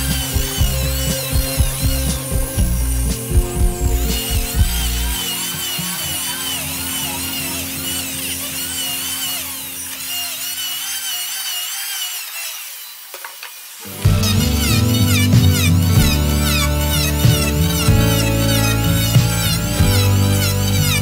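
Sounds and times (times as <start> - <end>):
background music: 0.0 - 8.1, 13.9 - 21.0
power tool whining on wood: 0.0 - 21.0.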